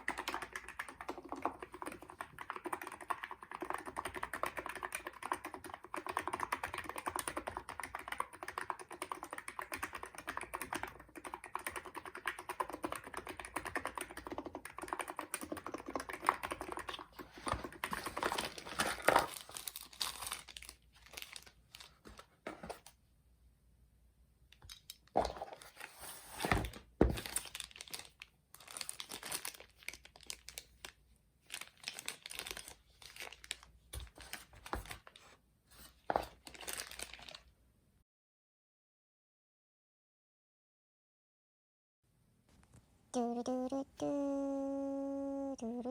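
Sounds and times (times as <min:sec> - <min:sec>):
fast keyboard typing: 0:00.0 - 0:18.7.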